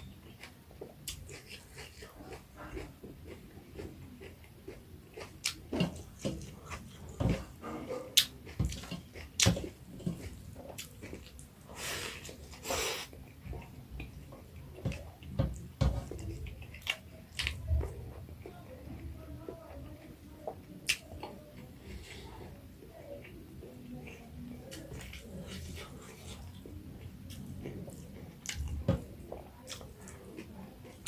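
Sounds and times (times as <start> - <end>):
chewing mouth clicks and smacks: 24.1 - 28.8.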